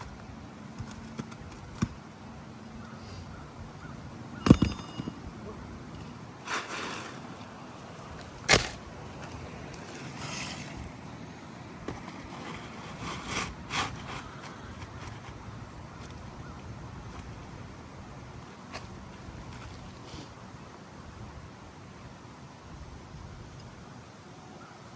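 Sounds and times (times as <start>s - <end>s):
sharp knock on shingles: 4.4s - 5.2s
short scraping sounds: 6.4s - 7.6s, 11.9s - 15.4s.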